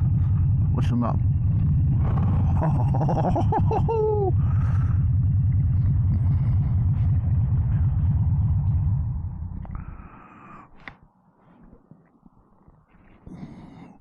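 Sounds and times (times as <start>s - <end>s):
motorcycle engine idling: 0.0s - 9.8s.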